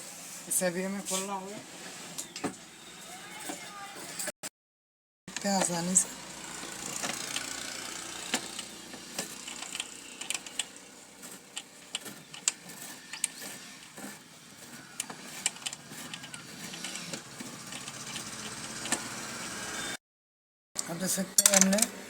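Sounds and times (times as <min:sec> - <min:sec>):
small metal clicks and scrapes: 0:08.3 - 0:19.0.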